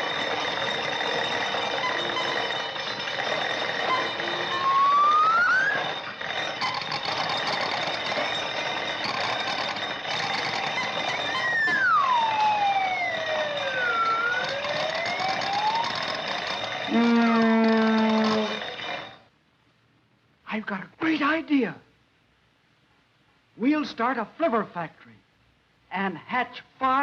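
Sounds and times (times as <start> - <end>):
gliding whistle sound effects: 3.8 - 6.2, 11.2 - 16.0
film soundtrack hiss: 18.4 - 27.0.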